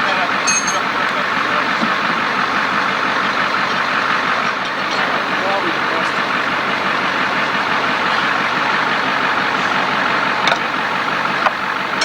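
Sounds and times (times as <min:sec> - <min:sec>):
vehicle engine drone: 0:00.0 - 0:12.0.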